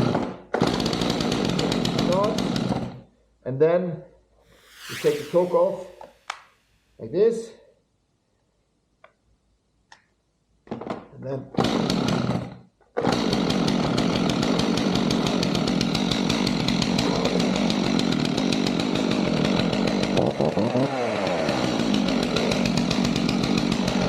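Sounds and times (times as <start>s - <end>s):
chainsaw pull start: 13.0s - 24.0s
chainsaw running: 13.2s - 24.0s.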